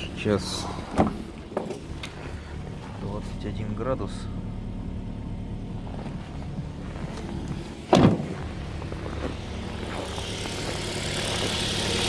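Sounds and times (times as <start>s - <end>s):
car engine idling: 0.0s - 12.0s
loud thump: 7.9s - 8.4s.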